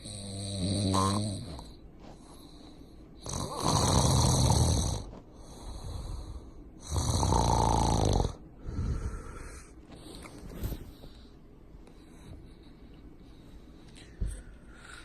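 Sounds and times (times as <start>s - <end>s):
loud snoring with rattle: 0.0s - 1.7s, 3.2s - 6.1s, 6.8s - 9.2s
quiet breath: 1.6s - 3.2s, 5.1s - 6.8s, 8.5s - 15.0s.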